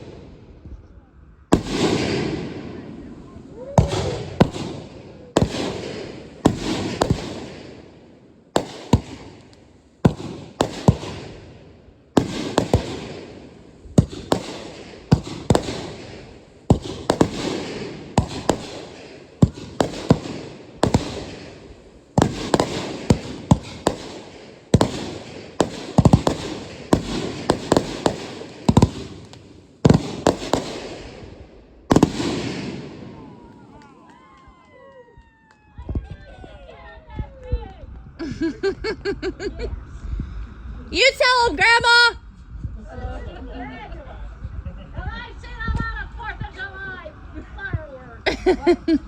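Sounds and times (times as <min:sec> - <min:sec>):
fireworks banging: 0:00.0 - 0:00.8, 0:01.5 - 0:34.5.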